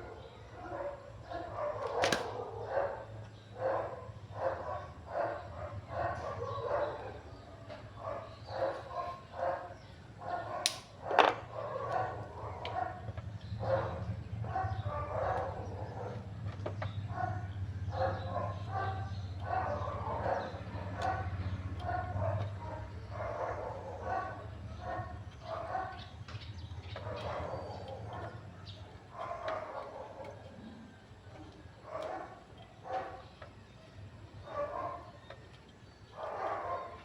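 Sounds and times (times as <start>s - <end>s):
dog barking and whining: 17.1s - 26.1s, 27.0s - 31.1s, 34.4s - 35.2s, 36.1s - 37.0s.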